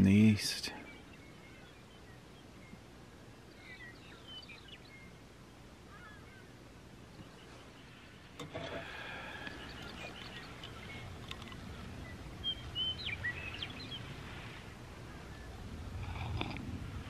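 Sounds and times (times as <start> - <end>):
birds calling: 0.0 - 17.0
low background noise: 0.0 - 17.0
high gliding bird chirps: 9.0 - 14.2.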